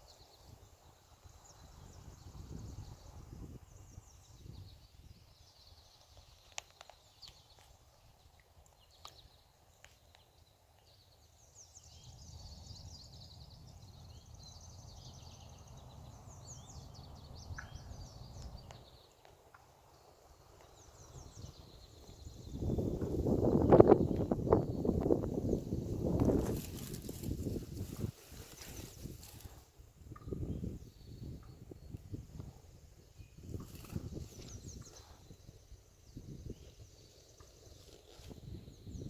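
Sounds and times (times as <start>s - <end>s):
bird chirps: 11.5s - 25.6s, 33.2s - 39.0s.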